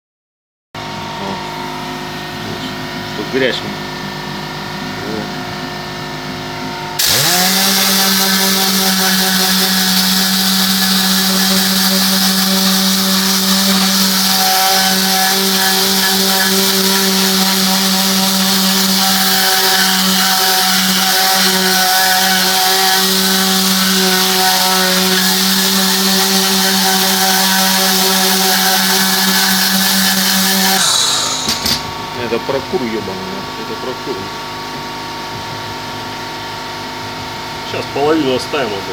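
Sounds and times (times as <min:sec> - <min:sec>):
buzzing hum: 0:00.8 - 0:32.4
compressed-air gun hissing: 0:29.6 - 0:32.0.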